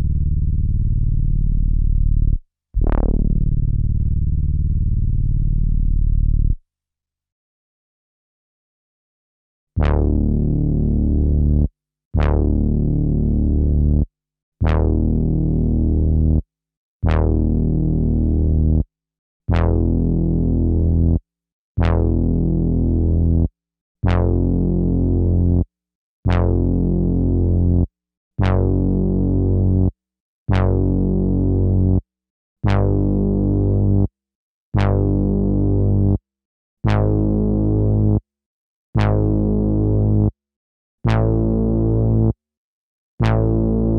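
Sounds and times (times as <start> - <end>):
sampled synthesizer notes: 9.8 - 14.0, 43.2 - 43.9.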